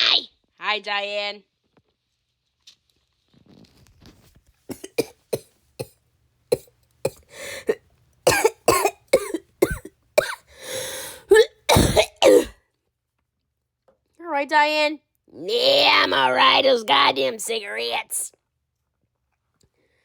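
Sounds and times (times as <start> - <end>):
person coughing harshly: 4.7 - 5.9, 6.5 - 12.6
noisy breaths drawn in: 7.2 - 7.8, 10.5 - 11.3.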